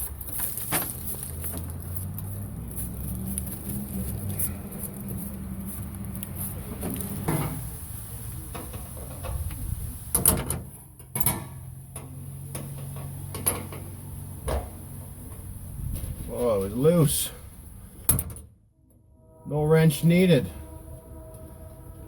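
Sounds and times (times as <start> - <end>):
truck parts knocking and clattering: 0.0 - 2.7, 3.4 - 16.3, 18.0 - 18.6
steady low hum: 13.4 - 22.0.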